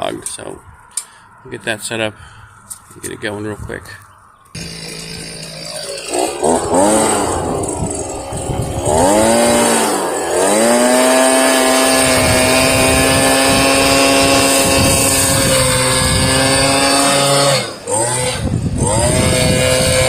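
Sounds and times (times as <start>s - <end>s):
leaf blower motor revving: 4.6s - 20.0s.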